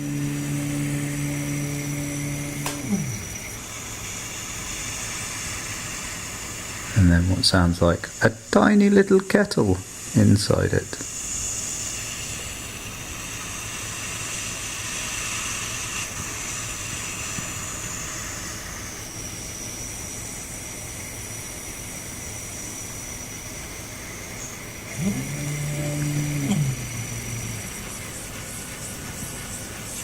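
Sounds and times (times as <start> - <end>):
motor whirring: 0.0 - 3.6, 24.9 - 28.7
electronic hiss with high whistle: 0.0 - 8.5, 9.6 - 30.0.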